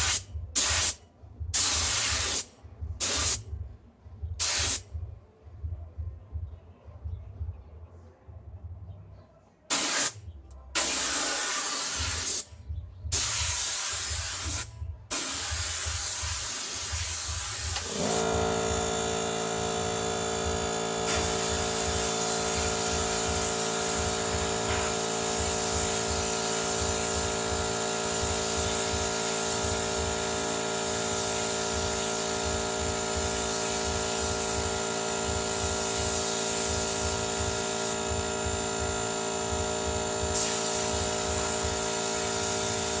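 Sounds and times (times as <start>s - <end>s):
compressed air hissing: 1.6s - 3.4s, 4.4s - 4.8s, 9.7s - 10.2s, 10.8s - 12.5s, 13.1s - 20.1s, 21.0s - 38.2s, 40.2s - 43.0s
compressor motor humming: 17.8s - 43.0s.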